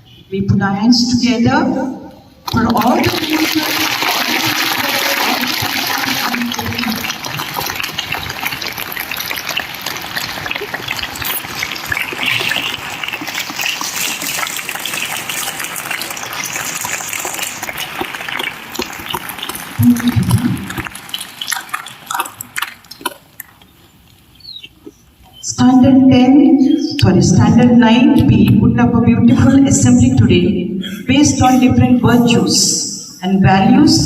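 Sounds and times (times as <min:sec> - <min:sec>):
audience applauding: 0:02.5 - 0:23.1.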